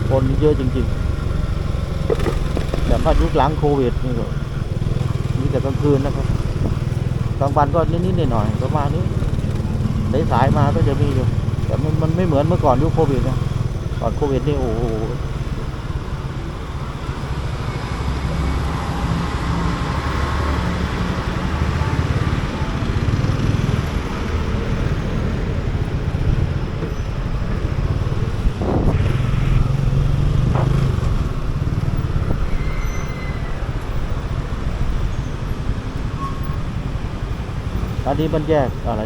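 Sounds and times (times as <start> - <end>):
city traffic noise: 0.0 - 39.0
motorcycle engine running: 0.0 - 39.0
loud swish: 28.5 - 31.4.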